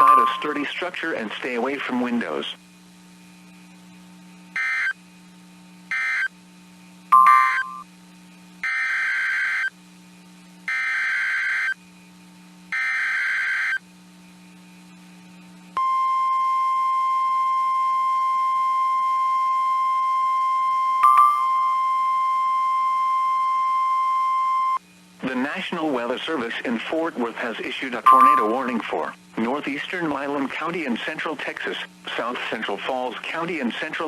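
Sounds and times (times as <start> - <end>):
steady warning alarm tone: 0.0 - 0.7, 4.6 - 5.0, 5.9 - 6.3, 7.1 - 7.8, 8.6 - 9.7, 10.7 - 11.8, 12.7 - 13.8.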